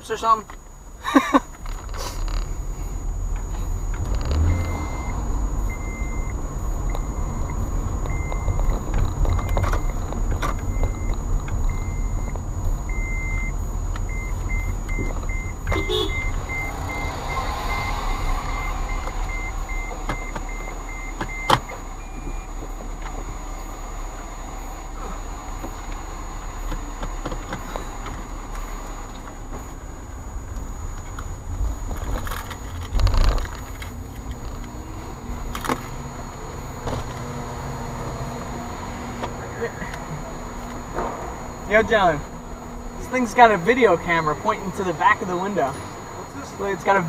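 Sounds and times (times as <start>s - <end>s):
car engine running: 0.0s - 47.0s
dashboard warning chime beeping: 4.1s - 23.8s.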